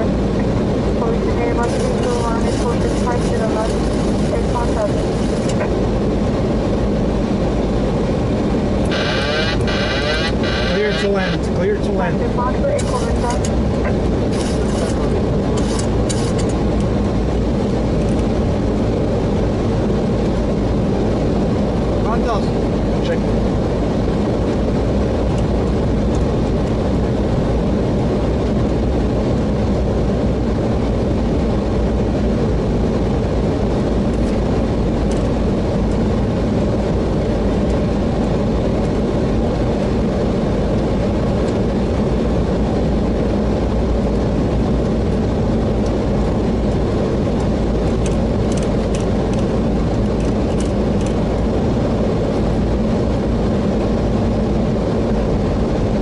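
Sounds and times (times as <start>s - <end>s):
cockpit airflow and engine rumble: 0.0s - 56.0s.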